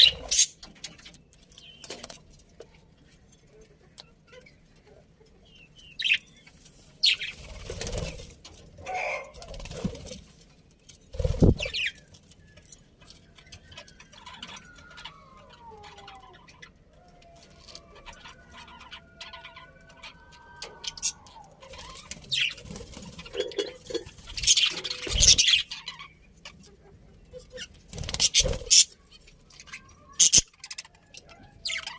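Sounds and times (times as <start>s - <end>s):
budgerigars chirping: 20.9s - 31.9s.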